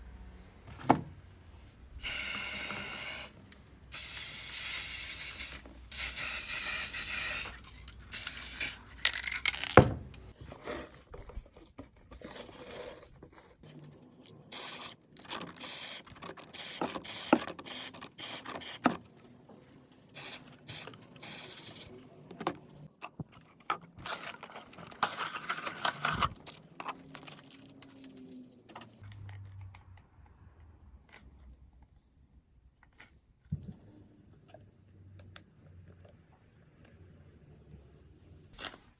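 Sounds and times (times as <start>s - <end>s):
objects being handled: 7.5s - 21.3s, 22.0s - 30.0s.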